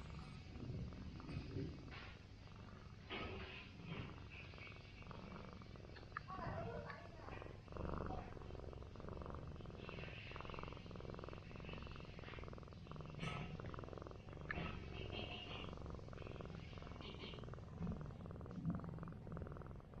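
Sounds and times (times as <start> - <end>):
cat purring: 0.0 - 20.0.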